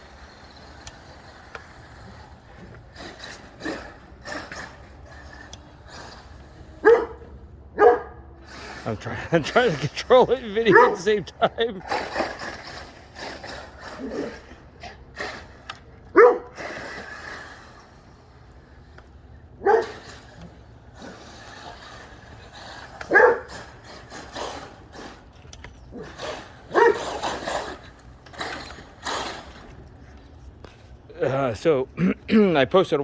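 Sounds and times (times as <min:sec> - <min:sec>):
dog barking: 0:06.8 - 0:07.2, 0:07.8 - 0:08.2, 0:10.7 - 0:11.0, 0:16.2 - 0:16.5, 0:19.6 - 0:20.0, 0:23.1 - 0:23.5, 0:26.7 - 0:27.0
dog yipping and whining: 0:25.8 - 0:27.2.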